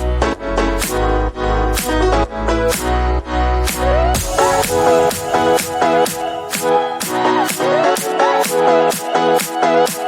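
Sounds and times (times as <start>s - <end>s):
electronic music with steady beat: 0.0s - 10.0s.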